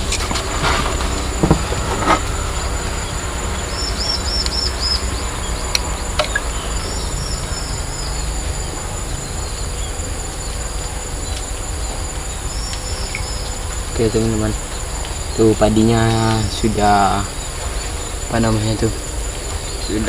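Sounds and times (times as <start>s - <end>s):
bird chirps: 0.0s - 20.0s
crickets and insects droning: 0.0s - 20.0s
low rumble: 0.0s - 20.0s
short knocks: 0.2s - 2.3s.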